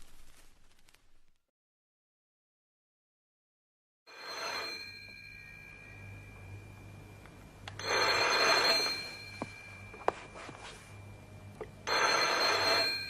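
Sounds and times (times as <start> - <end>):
telephone ringing: 4.1 - 6.5, 7.7 - 13.0.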